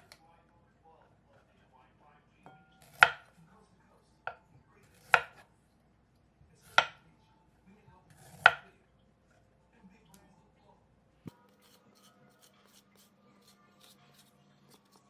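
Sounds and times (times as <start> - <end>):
knife striking cutting board: 2.5 - 3.3, 4.3 - 5.4, 6.7 - 7.0, 8.4 - 8.6.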